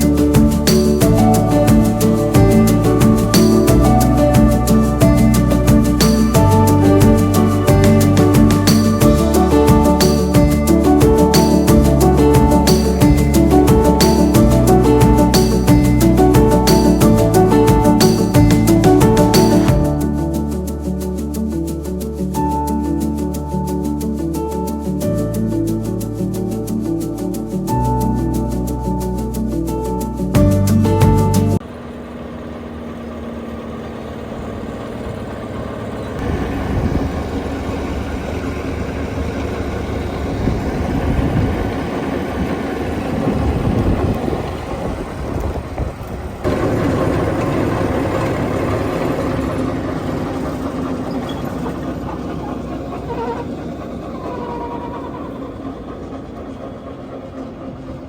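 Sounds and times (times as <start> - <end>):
wood chipper running: 31.6 - 58.0.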